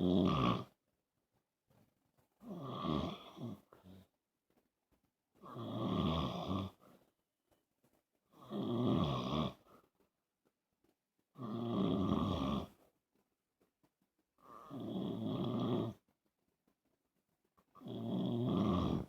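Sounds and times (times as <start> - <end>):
man snoring: 0.0 - 0.7, 2.5 - 3.6, 5.5 - 6.8, 8.4 - 9.6, 11.4 - 12.7, 14.5 - 16.0, 17.8 - 19.0
quiet breaths: 0.0 - 19.0.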